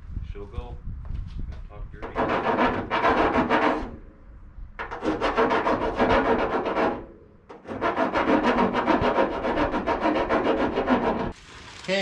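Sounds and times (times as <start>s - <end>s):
sanding rasping strokes: 2.0s - 4.0s, 5.0s - 11.4s.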